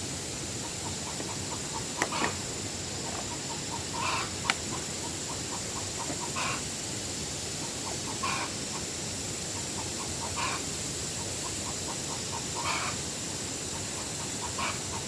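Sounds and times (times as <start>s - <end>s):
steady hiss: 0.0s - 15.0s
short animal calls: 3.3s - 4.7s, 5.3s - 6.6s.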